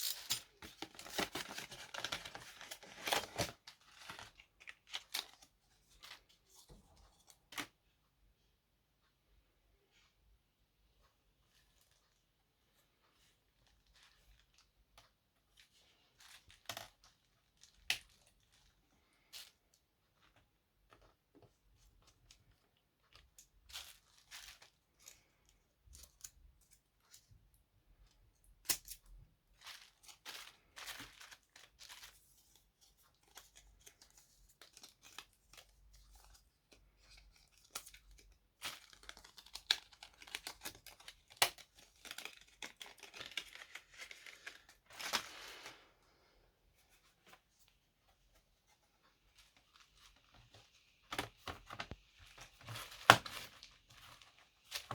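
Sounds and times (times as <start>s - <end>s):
crinkling tearing rustles: 0.0s - 5.5s, 37.0s - 45.9s.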